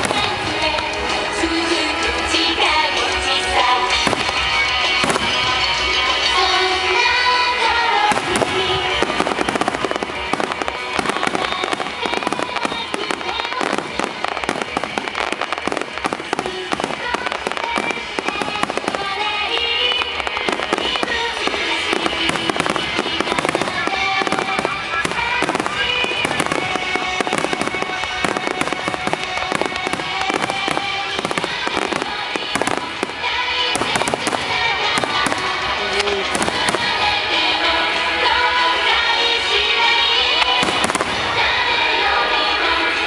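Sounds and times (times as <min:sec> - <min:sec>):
fireworks bursting and crackling: 0:00.0 - 0:43.0
music over loudspeakers: 0:00.0 - 0:43.0.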